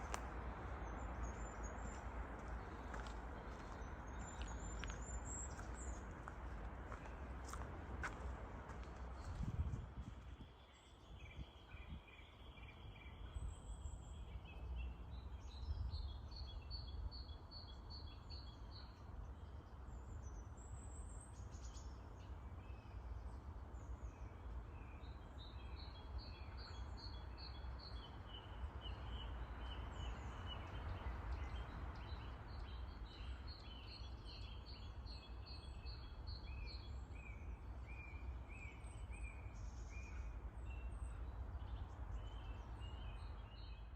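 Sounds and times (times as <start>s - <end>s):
steady low rumble: 0.0s - 10.5s
songbirds singing: 0.0s - 43.9s.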